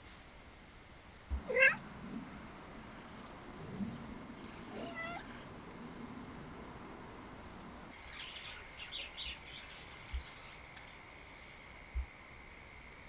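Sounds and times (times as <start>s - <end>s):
street background noise: 0.0s - 13.0s
bird chirps: 7.9s - 11.6s.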